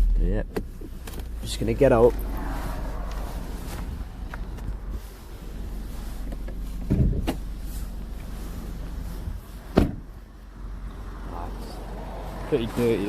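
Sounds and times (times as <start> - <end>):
car engine idling: 0.0 - 13.0
car door slammed shut: 6.8 - 7.4, 9.7 - 10.1.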